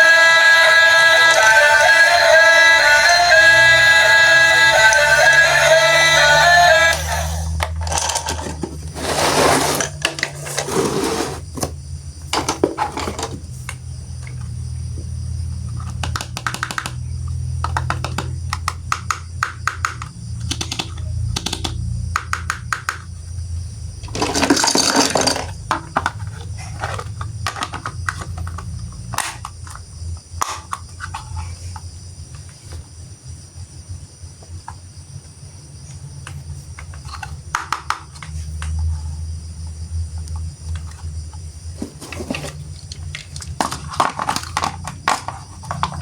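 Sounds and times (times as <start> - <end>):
plastic toy parts clicking: 6.9 - 8.7, 15.8 - 17.0, 17.6 - 23.0.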